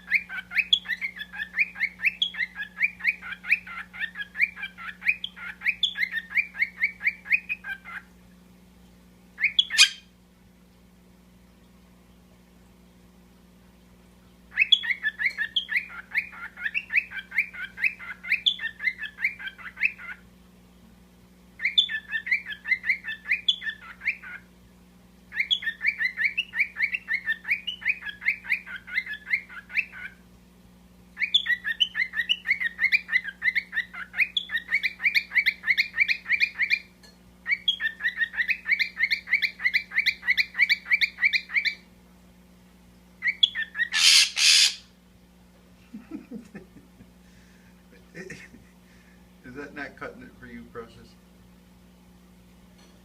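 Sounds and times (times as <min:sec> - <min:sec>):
parrots chattering: 0:00.0 - 0:08.1, 0:09.4 - 0:10.1, 0:14.5 - 0:20.3, 0:21.6 - 0:24.5, 0:25.3 - 0:30.2, 0:31.2 - 0:41.8, 0:43.2 - 0:44.9.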